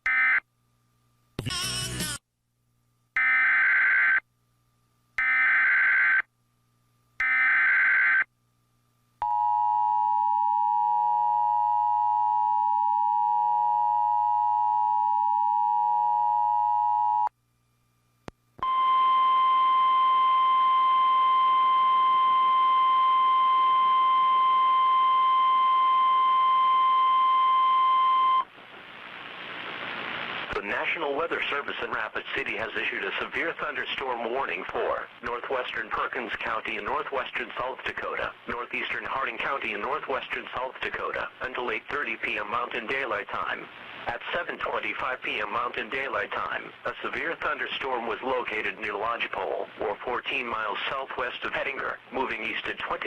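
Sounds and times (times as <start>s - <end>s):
warning alarm tone: 7.2s - 8.3s.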